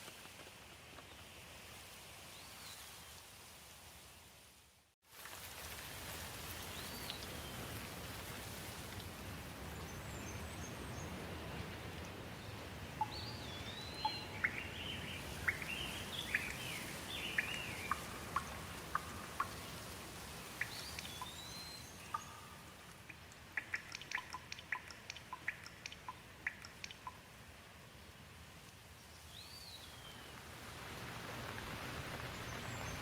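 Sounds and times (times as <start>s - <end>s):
rain falling: 5.1s - 33.0s
sharp water drips: 12.8s - 27.5s.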